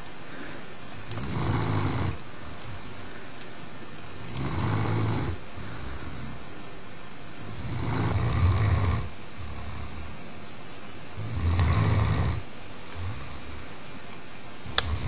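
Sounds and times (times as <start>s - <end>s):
dog snoring: 1.1s - 2.2s, 4.2s - 6.4s, 7.4s - 10.3s, 11.2s - 13.7s, 14.6s - 15.0s.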